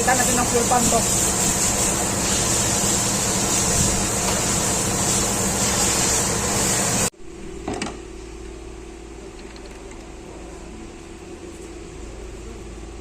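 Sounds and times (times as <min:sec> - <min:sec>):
engine running with high hiss: 0:00.0 - 0:07.1.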